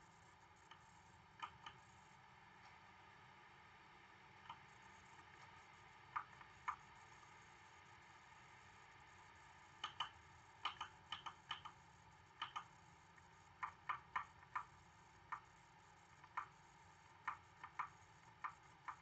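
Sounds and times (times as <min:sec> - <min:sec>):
faint steady hiss: 0:00.0 - 0:19.0
laptop keyboard typing: 0:06.1 - 0:06.9, 0:09.8 - 0:12.8, 0:13.6 - 0:15.5, 0:16.2 - 0:16.6, 0:17.2 - 0:19.0.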